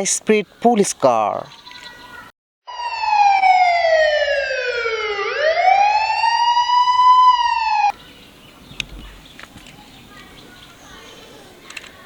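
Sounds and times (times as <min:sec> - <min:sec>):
police siren wailing: 0:02.7 - 0:07.9.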